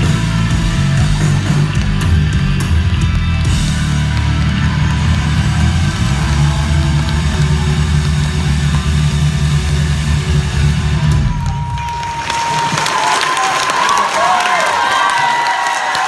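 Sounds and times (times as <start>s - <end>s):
rock band final chord: 0.0s - 11.3s.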